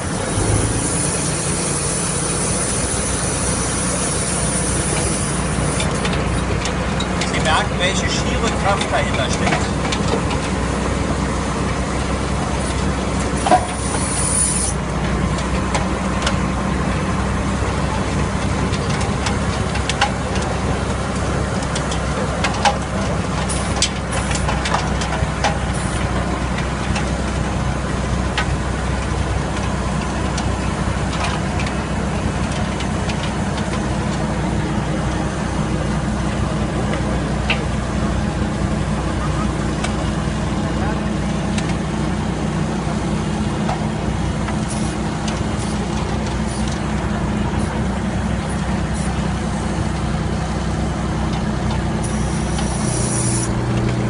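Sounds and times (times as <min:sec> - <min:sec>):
trenching machine engine running: 0:00.0 - 0:10.8, 0:11.5 - 0:15.6.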